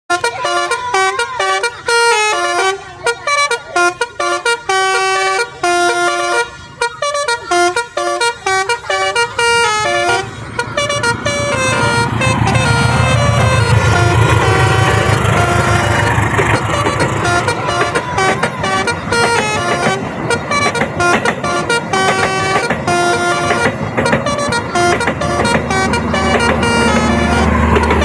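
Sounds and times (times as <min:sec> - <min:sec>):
multi-tone horn playing a tune: 0:00.1 - 0:28.0
low rumble: 0:10.2 - 0:17.9.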